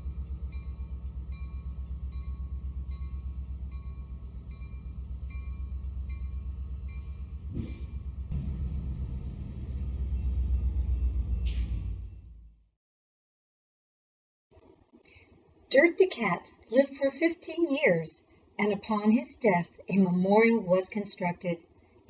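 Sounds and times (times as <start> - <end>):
light ringing: 0.0 - 7.4
train rumbling: 0.0 - 12.7.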